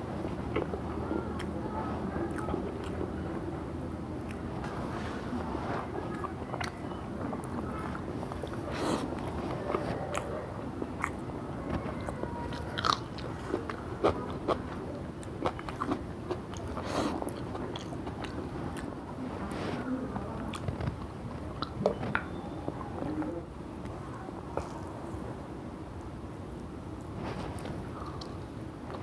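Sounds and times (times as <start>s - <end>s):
person chewing food: 0.4s - 1.6s, 6.1s - 19.0s, 20.4s - 22.4s.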